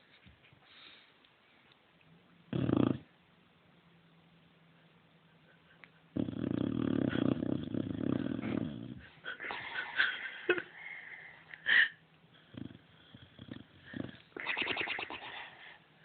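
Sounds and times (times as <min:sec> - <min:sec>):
dog snoring: 0:02.5 - 0:03.1, 0:06.1 - 0:09.0, 0:12.4 - 0:14.2.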